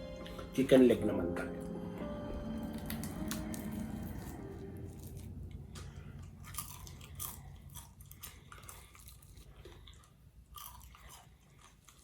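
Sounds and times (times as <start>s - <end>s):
fried chicken crunching: 2.7s - 12.0s.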